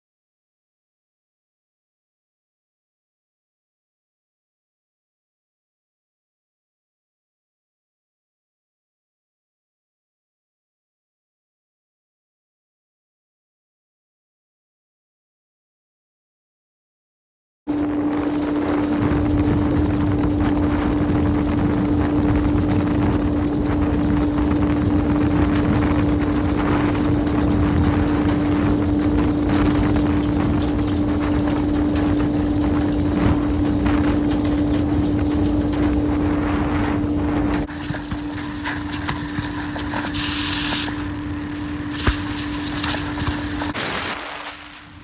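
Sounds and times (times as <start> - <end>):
vacuum machine humming: 17.7 - 45.0.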